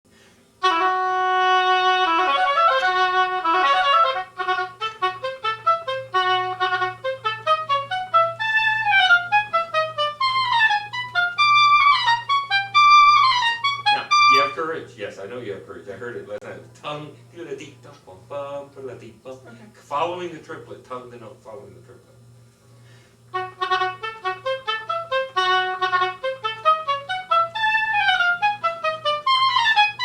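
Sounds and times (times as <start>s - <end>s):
faint low hum: 0.1s - 30.0s
solo oboe playing: 0.6s - 14.6s, 23.3s - 30.0s.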